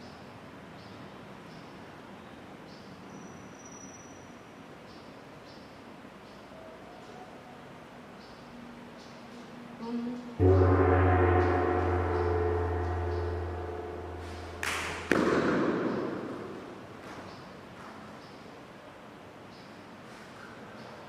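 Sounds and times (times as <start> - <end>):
gong ringing: 10.4 - 16.4
sharp crashing hits: 10.4 - 16.8.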